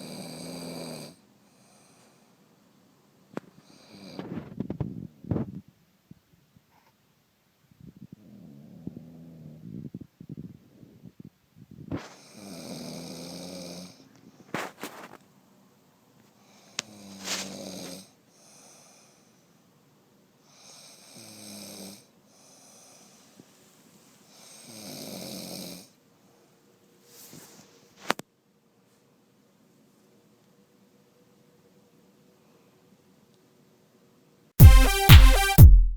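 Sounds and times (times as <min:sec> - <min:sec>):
woman snoring: 0:00.0 - 0:01.2, 0:03.7 - 0:04.4, 0:12.0 - 0:14.0, 0:16.8 - 0:18.1, 0:20.6 - 0:22.1, 0:24.4 - 0:25.9.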